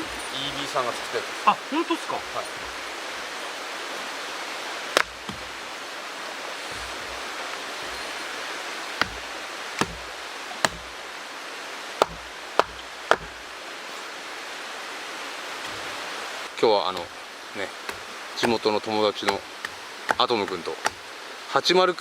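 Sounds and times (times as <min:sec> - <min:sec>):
mountain stream rushing: 0:00.0 - 0:22.0
sharp knocks: 0:05.0 - 0:05.5, 0:06.7 - 0:07.2, 0:09.0 - 0:11.0, 0:12.0 - 0:13.5, 0:19.2 - 0:21.0.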